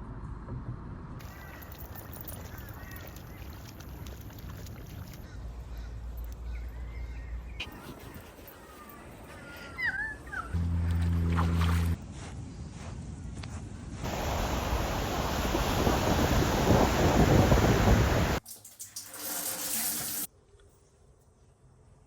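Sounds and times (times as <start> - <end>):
birds calling faintly: 1.2 - 11.7.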